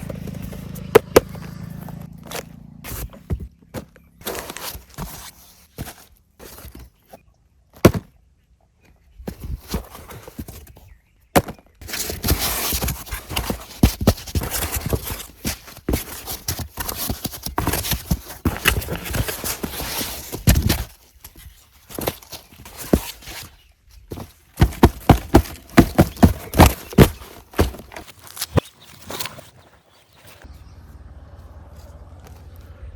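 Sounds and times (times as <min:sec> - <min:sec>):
rustling and scraping: 0:00.0 - 0:08.2, 0:08.8 - 0:30.6.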